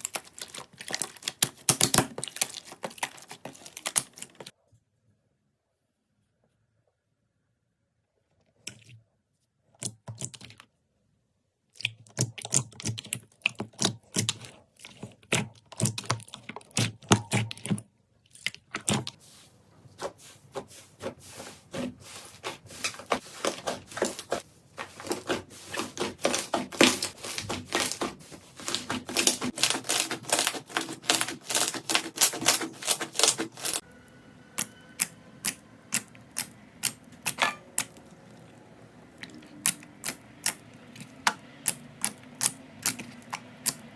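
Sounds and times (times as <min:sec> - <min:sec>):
slime crackling and popping: 0:00.0 - 0:04.5, 0:25.0 - 0:33.8, 0:34.6 - 0:43.9.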